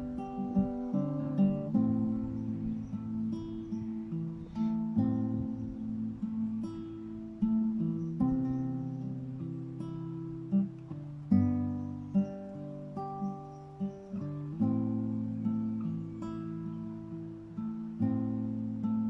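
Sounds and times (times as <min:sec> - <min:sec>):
plucked string instrument chords: 0:00.0 - 0:13.1.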